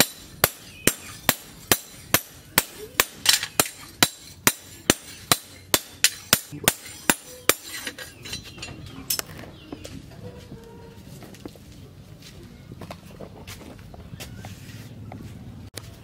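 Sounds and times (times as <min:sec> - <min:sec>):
hammer striking steel: 0:00.0 - 0:09.2.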